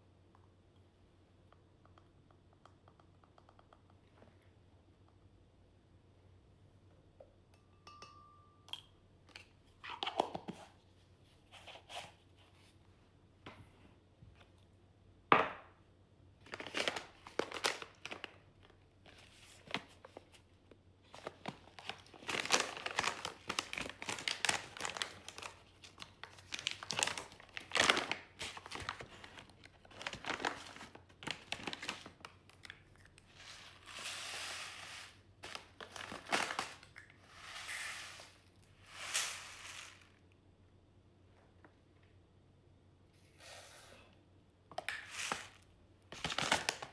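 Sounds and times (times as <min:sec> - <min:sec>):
packaging crinkling and tearing: 0:16.4 - 0:18.4, 0:21.1 - 0:32.8, 0:35.4 - 0:37.0, 0:45.1 - 0:46.9.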